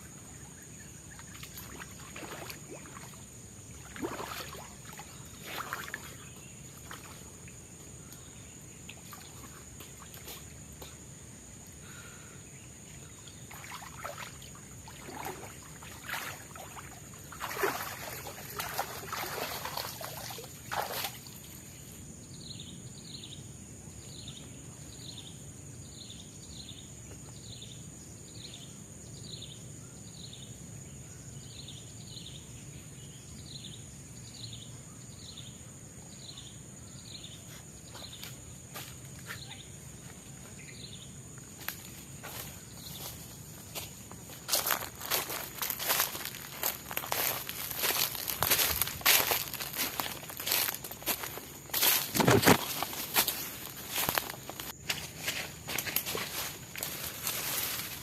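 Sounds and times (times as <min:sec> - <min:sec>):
forest insects droning: 0:00.0 - 0:58.0
water splashing and pouring: 0:03.8 - 0:06.1, 0:13.5 - 0:21.3.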